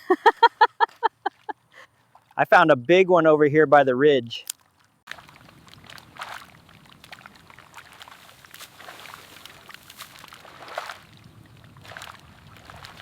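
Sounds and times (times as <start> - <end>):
sloshing in muddy water: 0.8 - 2.4, 4.5 - 13.0.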